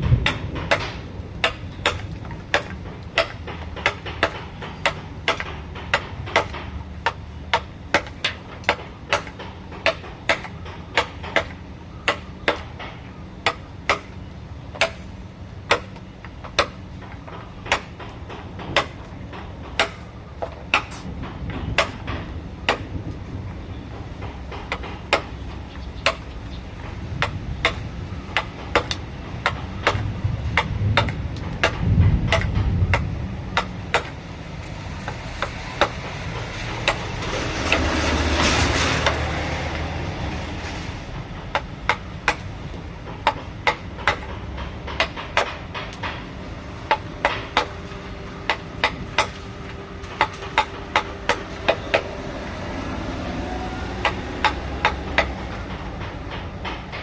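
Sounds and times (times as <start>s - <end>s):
mallet striking chisel: 0.2s - 14.2s, 14.8s - 15.1s, 19.8s - 21.0s, 28.4s - 32.5s, 43.2s - 46.2s
rushing noise: 21.0s - 57.0s.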